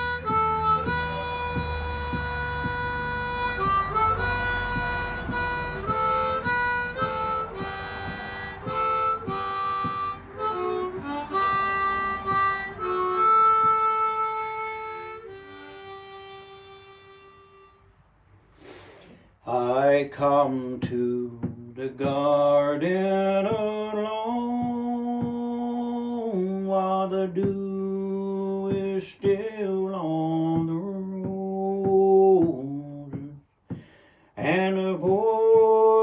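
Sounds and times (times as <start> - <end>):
harmonica playing a melody: 0.0 - 18.8.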